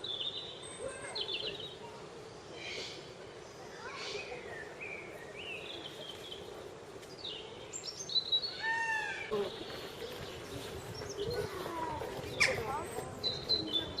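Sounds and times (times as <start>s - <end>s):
faint steady background noise: 0.0s - 14.0s
birds chirping and whistling: 7.2s - 14.0s.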